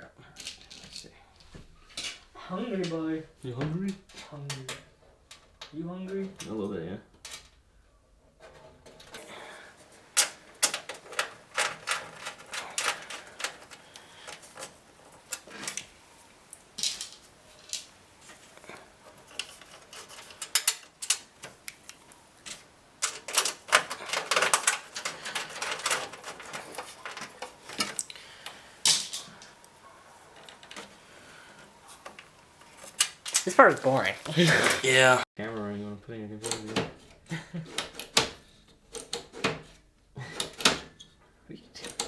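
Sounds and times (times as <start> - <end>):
rustling: 0.3 - 42.0
hard parts and tools clicking: 8.4 - 33.6, 36.4 - 41.2, 41.8 - 42.0.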